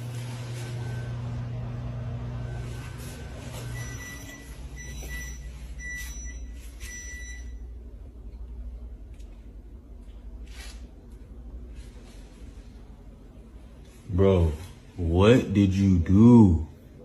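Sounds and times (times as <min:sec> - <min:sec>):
low steady hum: 0:00.0 - 0:17.0
short electronic beeps: 0:02.4 - 0:07.6.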